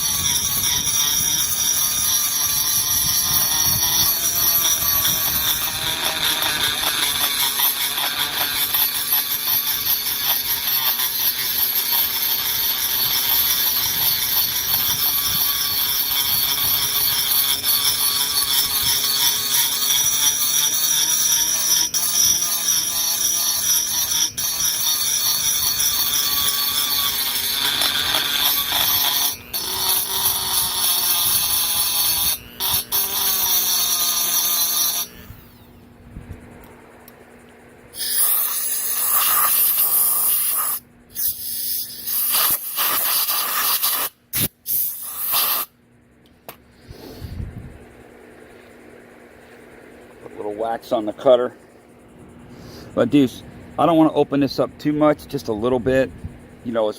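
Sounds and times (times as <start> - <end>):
rotary tool grinding metal: 0.0 - 35.8, 38.0 - 45.8.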